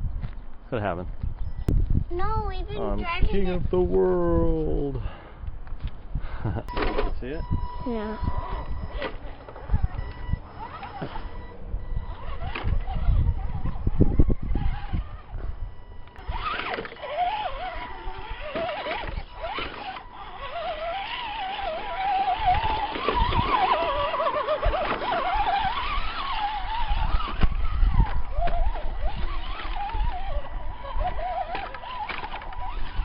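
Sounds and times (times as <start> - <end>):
wind rumble on microphone: 0.0 - 19.8, 20.4 - 33.0
toy truck electric motor whine: 6.7 - 33.0.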